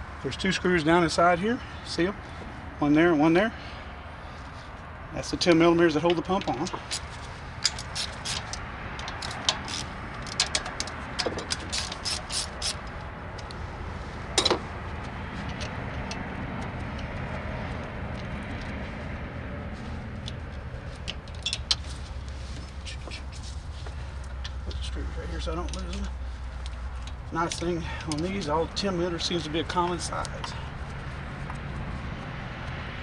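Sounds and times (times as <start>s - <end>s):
metal tools clinking: 6.3s - 12.8s
ratchet clicking: 6.8s - 12.9s.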